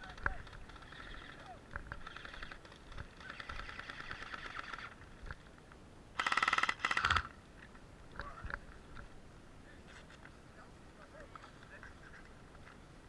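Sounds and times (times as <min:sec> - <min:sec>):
airsoft gun full-auto bursts: 0:00.3 - 0:01.4, 0:02.0 - 0:05.0, 0:06.2 - 0:07.4.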